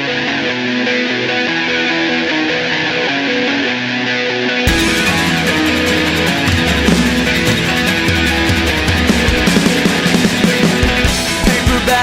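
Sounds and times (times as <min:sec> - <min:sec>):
electric guitars: 0:00.0 - 0:12.0
drum beat: 0:04.7 - 0:12.0.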